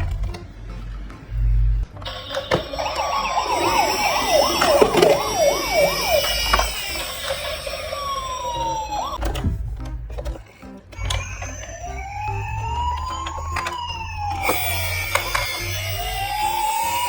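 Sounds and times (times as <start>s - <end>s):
toy sirens yelping and wailing: 2.0s - 9.2s, 11.0s - 17.0s.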